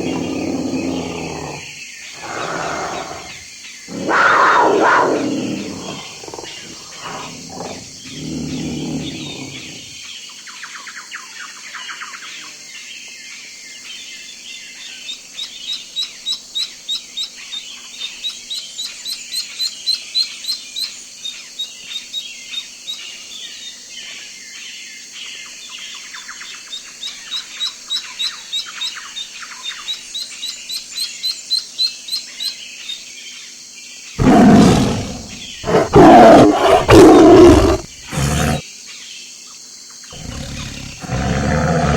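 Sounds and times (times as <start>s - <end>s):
big cat roaring: 0.0s - 10.0s, 34.2s - 38.6s, 40.2s - 41.9s
songbirds chirping: 0.0s - 20.8s, 32.5s - 39.1s, 40.2s - 41.9s.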